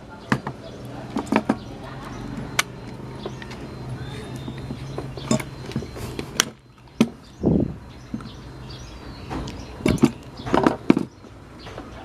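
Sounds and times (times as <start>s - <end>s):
sharp knocks and clicks: 0.3s - 1.7s, 9.2s - 12.0s.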